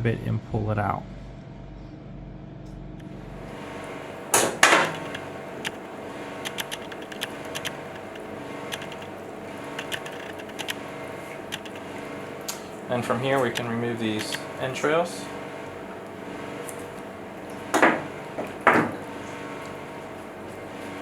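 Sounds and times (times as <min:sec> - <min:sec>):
steady background hum: 0:00.0 - 0:21.0
small clicks and ticks: 0:06.4 - 0:12.7, 0:13.3 - 0:14.5.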